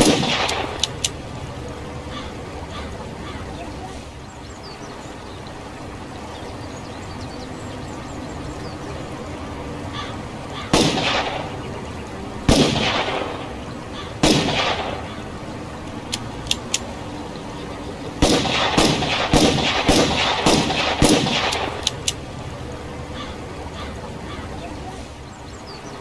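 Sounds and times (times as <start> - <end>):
revolver gunshots echoing: 0.0 - 1.1, 10.7 - 11.7, 12.5 - 15.4, 18.2 - 22.0.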